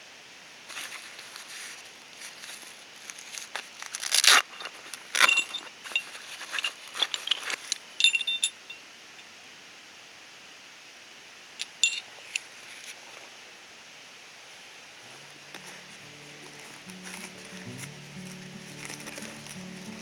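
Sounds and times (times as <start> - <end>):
metal camping gear clinking: 2.2 - 8.9, 11.6 - 12.6, 15.1 - 20.0.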